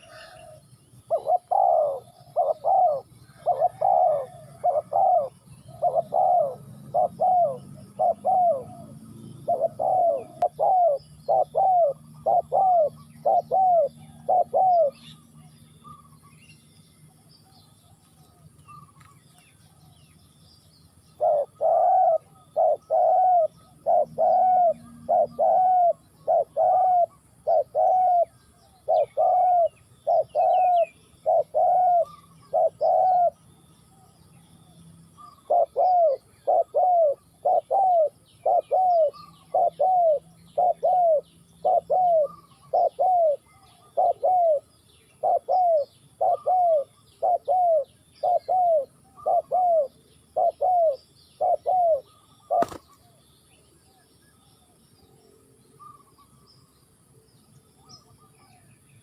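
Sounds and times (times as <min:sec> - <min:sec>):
dove cooing: 0:00.0 - 0:16.2, 0:21.1 - 0:53.2
small birds chirping: 0:00.0 - 0:59.0.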